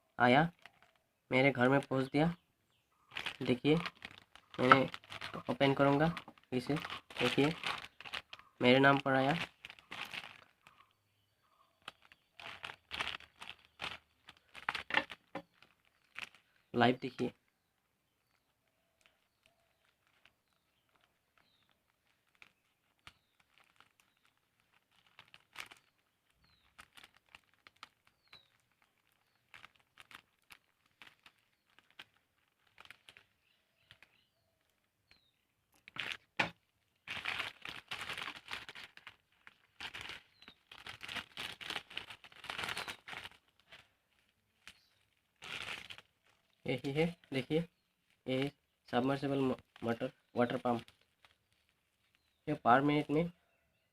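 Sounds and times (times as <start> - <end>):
packaging crinkling and tearing: 0.5 - 1.0, 3.1 - 11.0, 11.6 - 17.6, 18.2 - 34.9, 35.6 - 52.4
packaging rustling and clicking: 3.1 - 10.8, 11.8 - 16.6, 18.3 - 34.8, 35.7 - 47.2.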